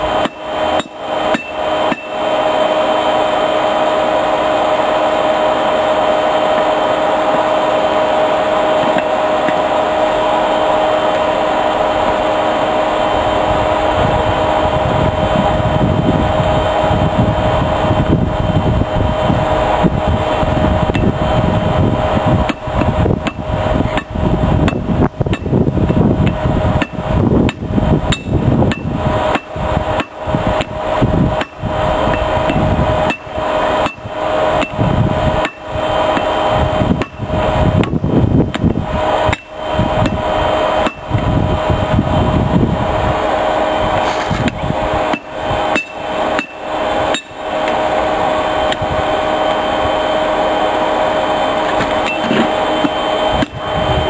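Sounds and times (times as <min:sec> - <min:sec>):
air blower humming: 0:00.0 - 0:54.0
hammer striking metal on anvil: 0:00.2 - 0:02.2, 0:26.2 - 0:30.8, 0:31.4 - 0:34.0, 0:35.4 - 0:36.3, 0:39.3 - 0:39.6, 0:40.8 - 0:41.0, 0:44.5 - 0:47.8, 0:51.9 - 0:53.6.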